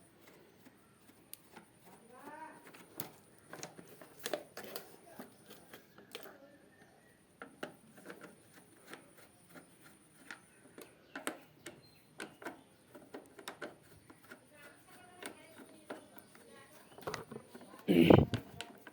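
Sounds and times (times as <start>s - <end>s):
tools and fan parts clicking: 10.2s - 17.7s.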